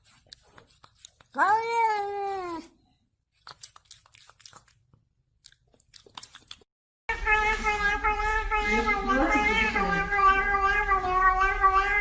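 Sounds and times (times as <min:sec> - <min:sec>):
cat meowing: 0:07.2 - 0:12.0.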